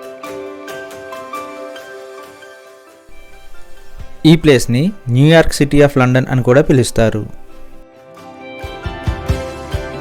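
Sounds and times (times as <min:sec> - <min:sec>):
light plucked melody: 0:03.1 - 0:07.8.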